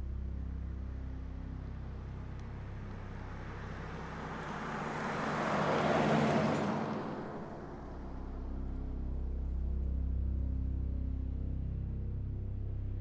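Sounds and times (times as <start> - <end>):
vehicle passing by: 3.8 - 7.7.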